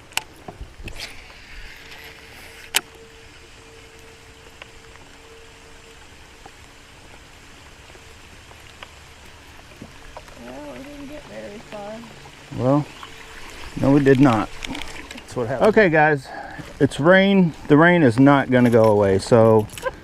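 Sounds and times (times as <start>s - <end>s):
rain falling on water and boat: 0.0s - 20.0s
faint hum: 1.0s - 15.6s.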